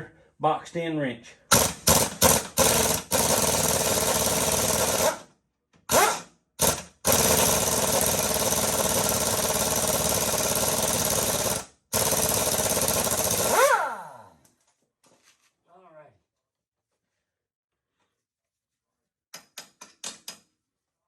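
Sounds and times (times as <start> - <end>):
power tool whirring: 1.5 - 5.3, 5.9 - 14.4.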